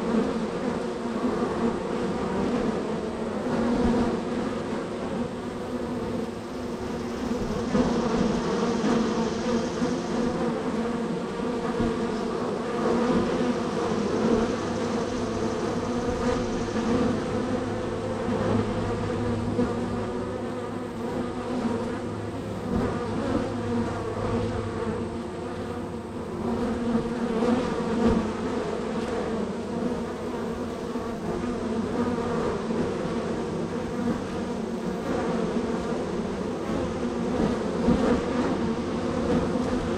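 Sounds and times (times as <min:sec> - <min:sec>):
bees buzzing at a hive: 0:00.0 - 0:39.9.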